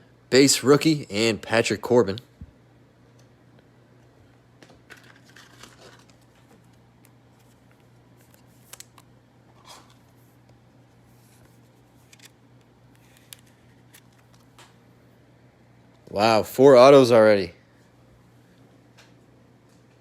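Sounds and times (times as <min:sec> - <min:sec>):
low electrical hum: 0:00.0 - 0:20.0
trading cards rustling: 0:04.9 - 0:14.8.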